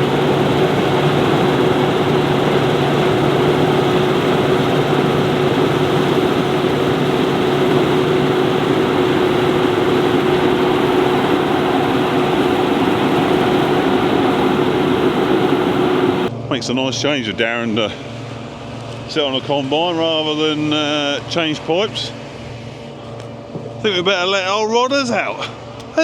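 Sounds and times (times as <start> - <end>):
combine harvester running: 0.0 - 16.3.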